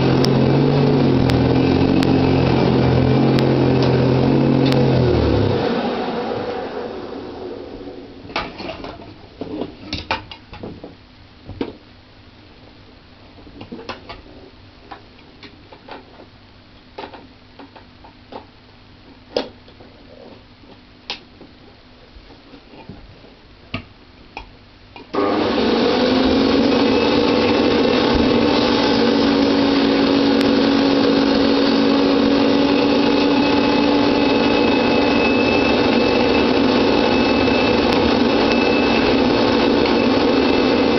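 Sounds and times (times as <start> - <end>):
vacuum cleaner humming and whining: 0.0 - 8.3, 25.1 - 40.9.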